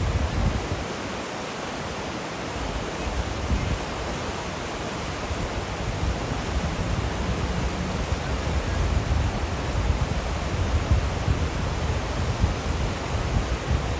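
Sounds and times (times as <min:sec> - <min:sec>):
river rapids rushing: 0:00.1 - 0:12.1.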